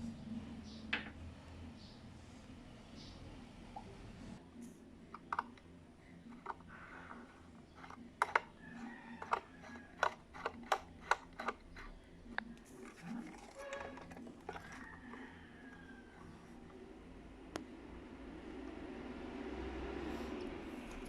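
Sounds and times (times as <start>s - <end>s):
plastic clicks and taps: 7.8s - 8.5s, 9.2s - 14.7s.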